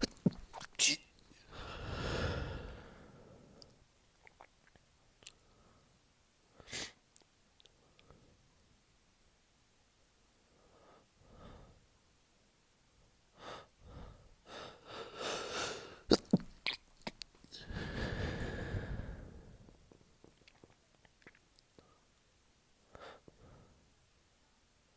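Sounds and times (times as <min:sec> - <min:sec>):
man sneezing: 0:00.0 - 0:01.1
breathy exhale: 0:01.5 - 0:03.6, 0:17.6 - 0:19.6
gasping in-breaths: 0:01.5 - 0:03.7, 0:17.5 - 0:19.7.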